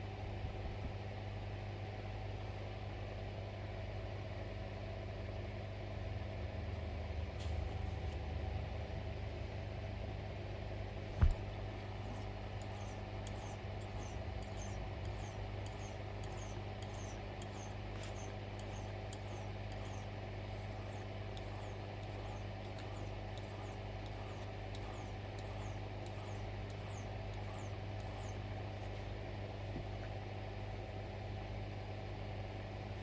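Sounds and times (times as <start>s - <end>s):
knife scraping on whetstone: 11.8s - 28.4s.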